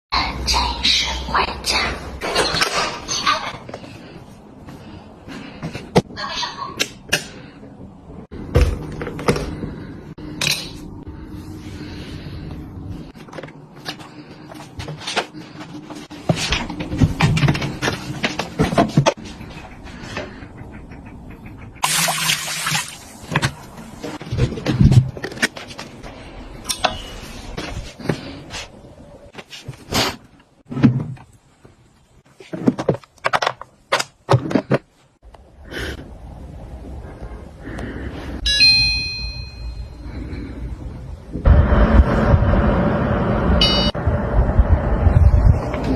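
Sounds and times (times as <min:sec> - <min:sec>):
household items knocking and clattering: 0:08.4 - 0:09.7, 0:32.4 - 0:35.0
steady low hum: 0:35.3 - 0:45.9.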